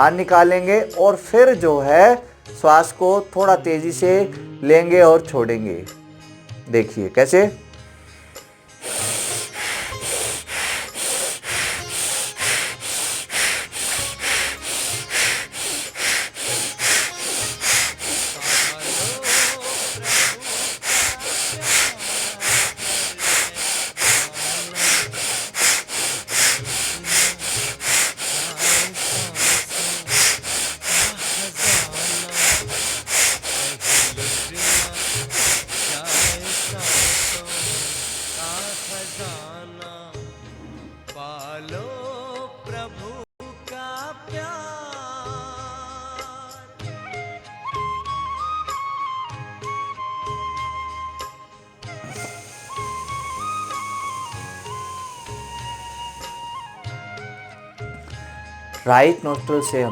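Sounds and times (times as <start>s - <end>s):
forceful breathing through nostril: 7.8s - 39.5s, 52.0s - 57.4s.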